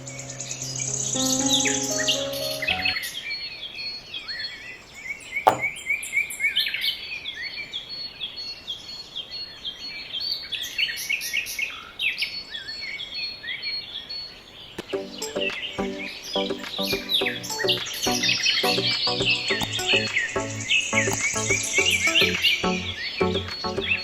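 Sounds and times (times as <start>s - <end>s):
birds chirping: 0.0s - 3.3s, 14.8s - 24.0s
sharp knock: 5.5s - 5.8s.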